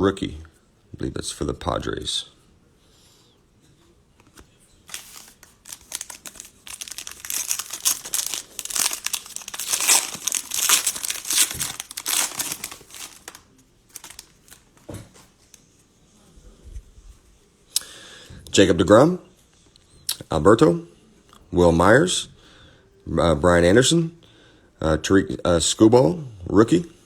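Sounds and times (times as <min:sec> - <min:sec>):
cellophane crinkling and tearing: 0:04.9 - 0:15.6.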